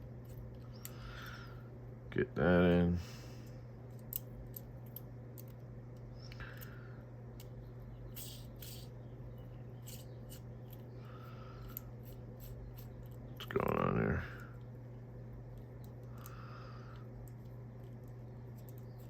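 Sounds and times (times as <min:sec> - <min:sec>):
steady low hum: 0:00.0 - 0:19.0
screwdriver clicking and scraping: 0:08.2 - 0:08.9, 0:09.8 - 0:10.9.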